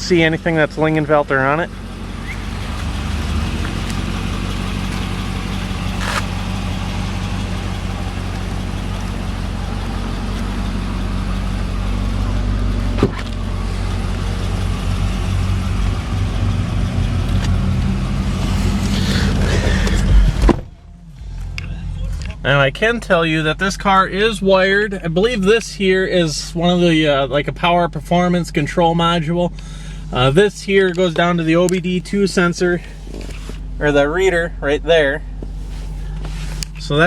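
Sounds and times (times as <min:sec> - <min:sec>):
car engine idling: 0:00.0 - 0:37.0.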